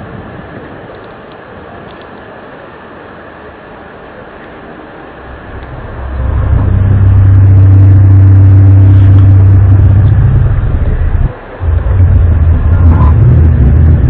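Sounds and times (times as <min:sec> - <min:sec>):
deep steady drone: 0:03.5 - 0:14.0.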